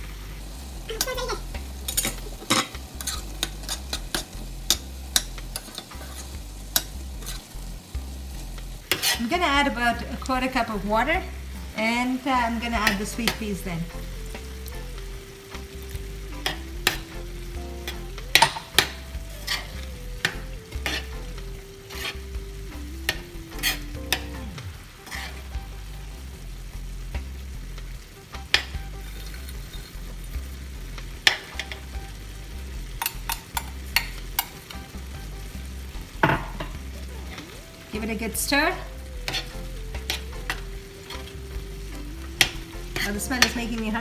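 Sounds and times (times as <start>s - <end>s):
minced meat sizzling: 0.0s - 44.0s
spoon knocking against pot: 36.2s - 36.8s.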